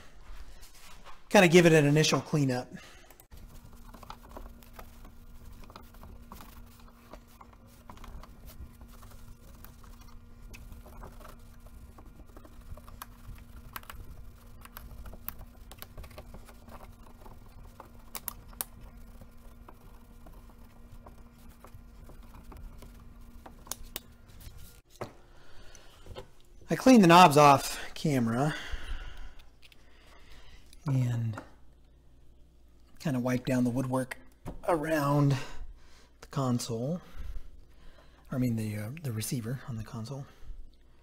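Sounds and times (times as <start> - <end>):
faint steady hum: 0.0 - 41.0
hands clicking and tapping controls: 3.2 - 25.2.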